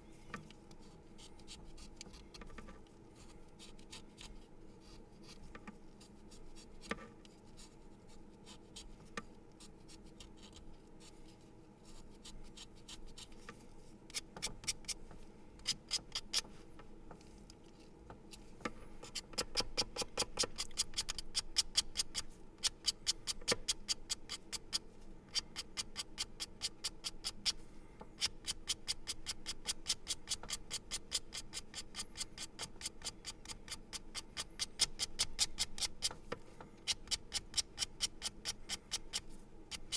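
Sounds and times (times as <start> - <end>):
pencil being sharpened: 36.9 - 39.9.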